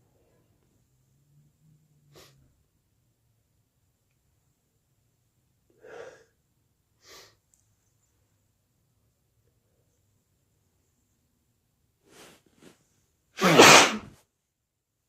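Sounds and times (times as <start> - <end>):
person sneezing: 13.4 - 14.1.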